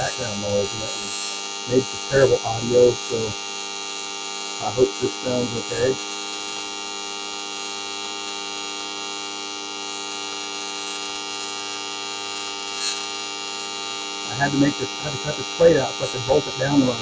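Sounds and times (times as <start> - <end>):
welding arc buzzing: 0.0 - 17.0.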